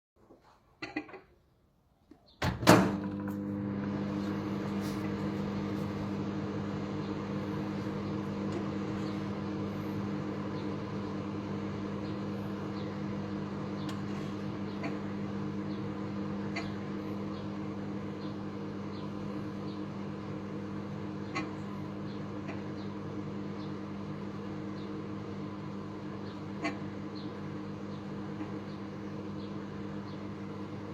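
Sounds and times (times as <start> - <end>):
microwave clunk: 2.4 - 3.5
microwave humming: 2.4 - 30.9.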